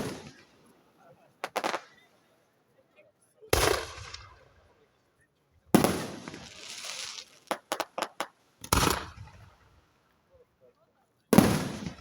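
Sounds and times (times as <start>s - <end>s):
fireworks booming with crackle: 0.0s - 0.5s, 1.4s - 2.0s, 3.6s - 4.5s, 5.8s - 9.7s, 11.3s - 12.0s
sharp firework pops: 1.4s - 2.0s, 3.5s - 4.4s, 5.8s - 9.6s.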